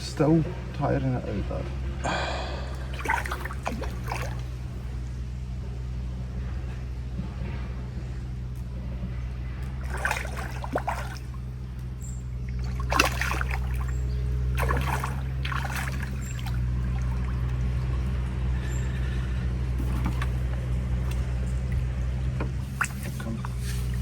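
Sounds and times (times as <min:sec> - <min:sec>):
steady low rumble: 0:00.0 - 0:24.0
fish splashing at the surface: 0:02.1 - 0:04.6, 0:09.8 - 0:11.4, 0:12.6 - 0:18.1, 0:22.6 - 0:24.0.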